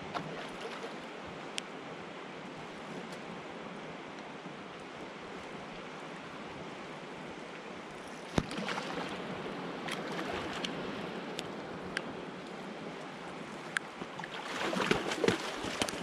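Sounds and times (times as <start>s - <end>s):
river water rushing: 3.4s - 16.0s.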